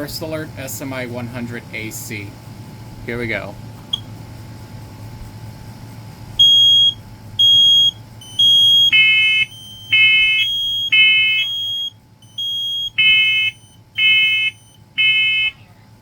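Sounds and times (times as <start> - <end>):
second lower smoke alarm beeps: 6.4 - 15.6
smoke alarm beeping: 6.4 - 15.6.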